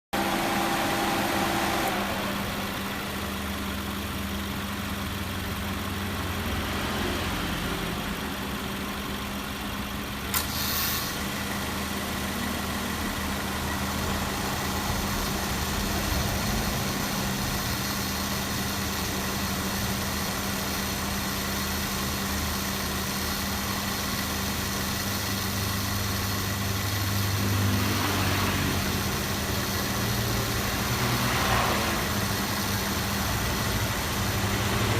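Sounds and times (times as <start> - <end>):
compressor running noise: 0.2 - 3.2, 10.2 - 34.9
car engine idling: 0.2 - 34.9
compressor engaging click: 10.3 - 10.9.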